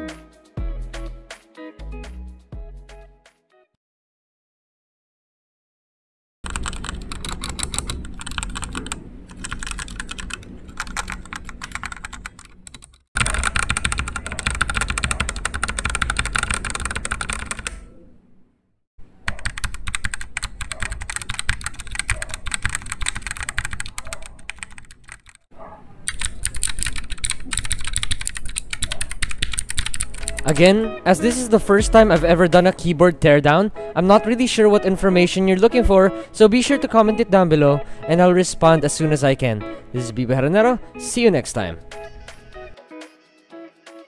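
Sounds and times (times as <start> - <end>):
fast mechanical keyboard typing: 6.5 - 17.8, 19.3 - 25.4, 26.1 - 30.7.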